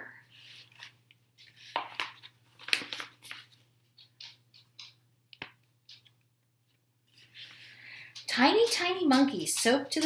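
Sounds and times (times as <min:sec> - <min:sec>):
paper rustling and crackling: 0:00.4 - 0:04.1.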